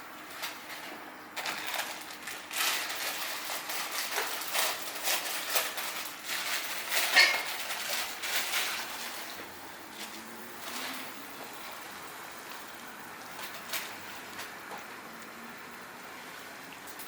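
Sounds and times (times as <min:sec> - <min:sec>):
water boiling in a pot: 0:00.0 - 0:17.0
scraping and knocking in kitchen: 0:02.5 - 0:11.9.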